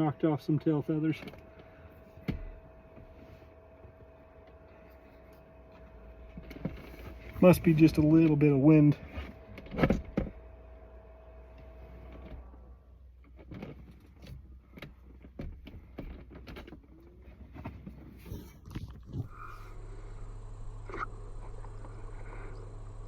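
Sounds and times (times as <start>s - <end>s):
steady low hum: 0.0s - 13.1s, 16.2s - 23.0s
clicks and rustles of handling: 13.2s - 19.3s.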